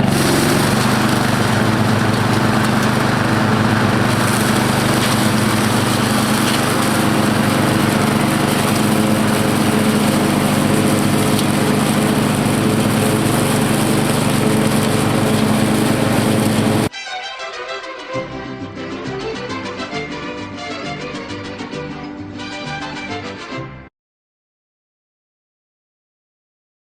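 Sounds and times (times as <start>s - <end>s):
lawn tractor engine running: 0.0s - 16.9s
music: 16.9s - 23.9s.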